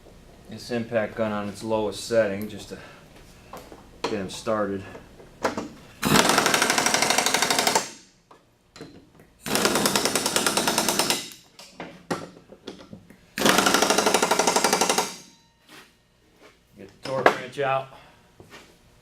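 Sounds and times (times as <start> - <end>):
impact wrench hammering: 5.5 - 8.1, 8.8 - 12.8, 13.4 - 15.4.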